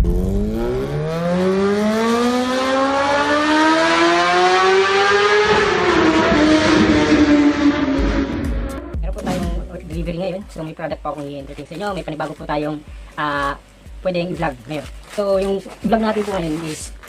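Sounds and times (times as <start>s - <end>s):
car engine revving: 0.0s - 9.8s.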